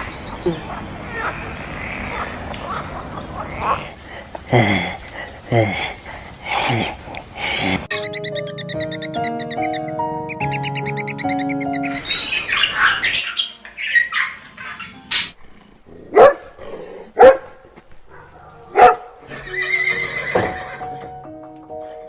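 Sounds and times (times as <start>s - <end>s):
dog barking: 16.1s - 16.6s, 17.2s - 19.2s.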